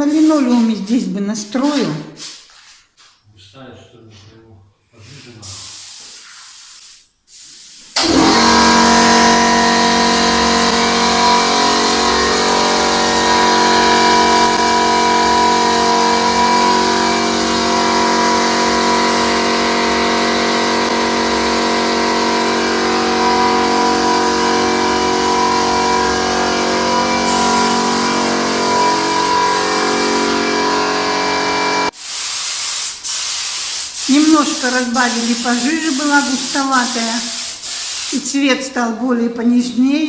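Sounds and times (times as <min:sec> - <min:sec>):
short air hiss: 0:05.0 - 0:08.0, 0:32.0 - 0:38.2
air compressor humming: 0:07.6 - 0:38.6.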